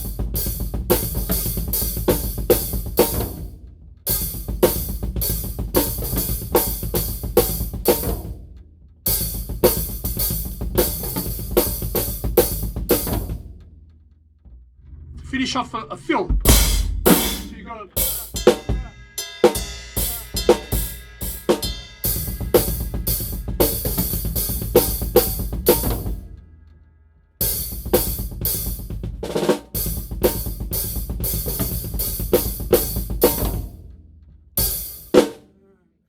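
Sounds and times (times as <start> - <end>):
acoustic drum kit playing: 0.0 - 8.5, 9.1 - 13.6, 16.3 - 26.4, 27.4 - 33.9, 34.6 - 35.4
cymbals ringing: 16.5 - 26.4.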